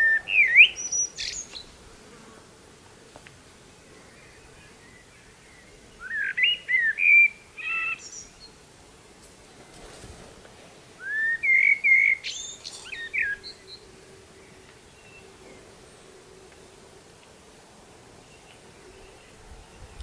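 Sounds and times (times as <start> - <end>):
songbird singing: 0.0 - 1.8, 3.5 - 8.6, 11.0 - 20.0.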